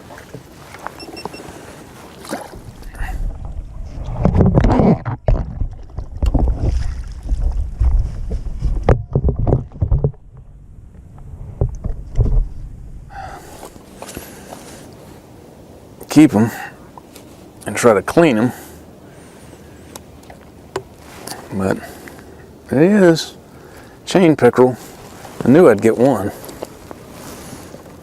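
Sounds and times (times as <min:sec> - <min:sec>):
knocks and bumps on kayak: 0:02.3 - 0:10.6.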